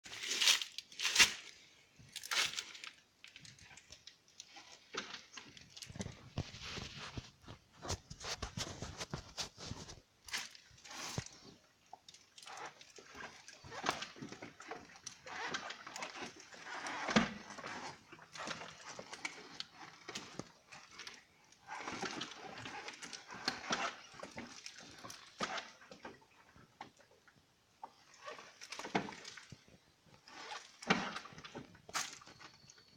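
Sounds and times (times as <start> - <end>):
motorcycle drivetrain crunching: 15.2 - 15.6.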